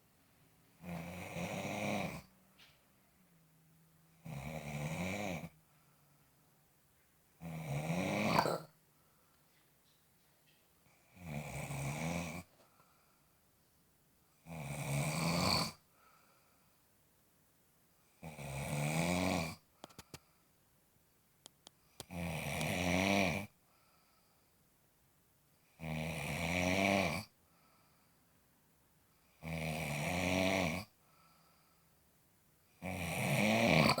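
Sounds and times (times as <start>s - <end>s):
person snoring: 0.8s - 2.3s, 4.2s - 5.5s, 7.4s - 8.7s, 11.2s - 12.5s, 14.5s - 15.8s, 18.2s - 19.6s, 22.1s - 23.5s, 32.8s - 34.0s.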